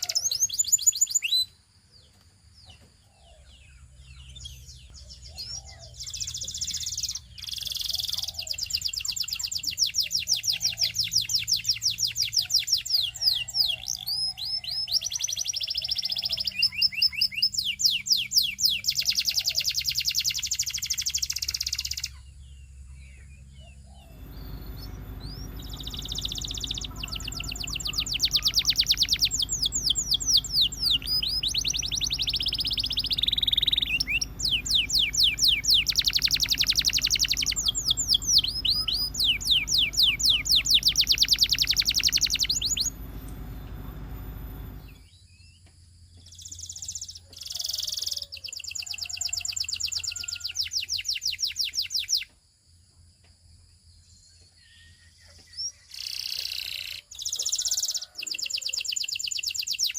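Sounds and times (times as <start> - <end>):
canary singing trills: 0.0 - 1.6, 2.7 - 45.1.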